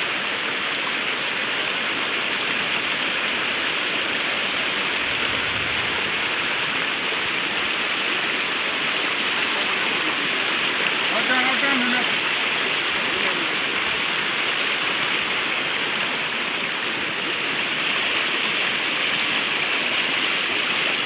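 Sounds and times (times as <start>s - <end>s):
floodwater rushing: 0.0s - 21.0s.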